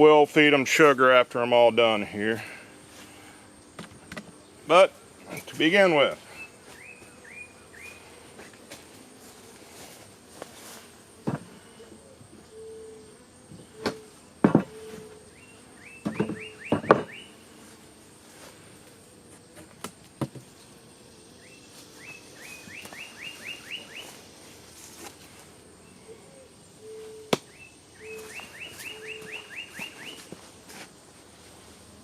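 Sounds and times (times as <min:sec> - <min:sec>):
songbird chirping: 0:06.0 - 0:08.2, 0:14.7 - 0:17.5, 0:20.5 - 0:30.5
wooden knocks and clunks: 0:11.2 - 0:11.5, 0:13.8 - 0:14.8, 0:16.0 - 0:17.2, 0:19.6 - 0:20.5.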